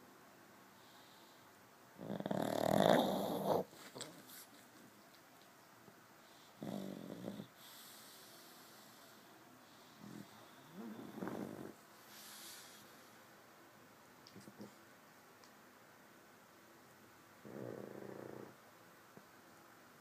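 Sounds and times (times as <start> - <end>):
dog snoring: 2.0 - 3.7, 6.3 - 12.8, 17.4 - 18.6.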